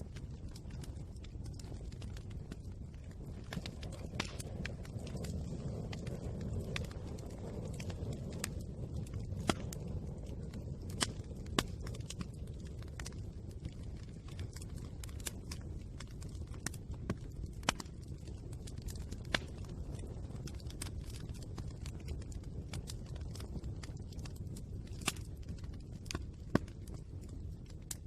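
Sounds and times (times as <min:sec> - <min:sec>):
fire crackling: 0:00.0 - 0:28.0.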